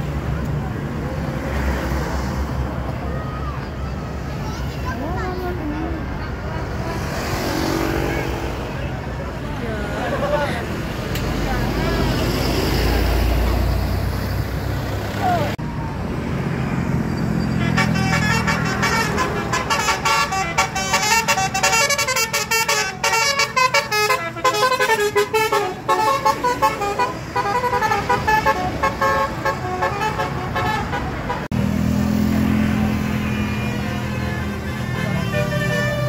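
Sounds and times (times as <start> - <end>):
multi-tone bus horn tune: 17.4 - 31.5, 33.0 - 36.0.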